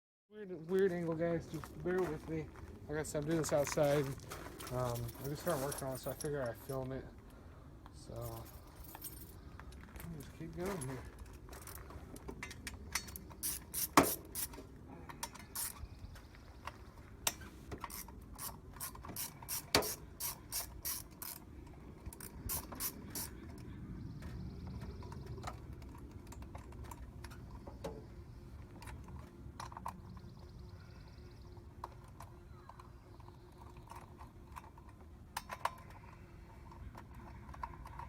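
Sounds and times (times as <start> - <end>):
ratchet wrench clicking: 13.0 - 14.6, 15.2 - 15.8, 17.8 - 21.4, 22.2 - 23.4.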